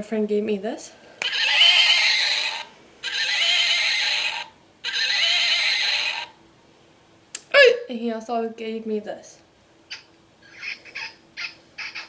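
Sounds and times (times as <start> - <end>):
toy sound chip wavering sound: 1.2 - 6.3, 9.9 - 12.0.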